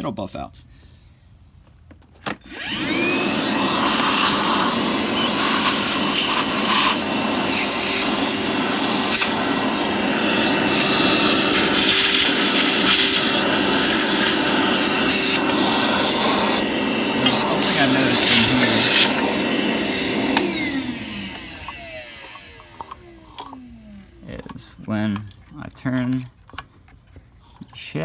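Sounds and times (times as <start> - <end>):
power tool whine: 2.3 - 24.7
rotary tool grinding metal: 2.5 - 26.3.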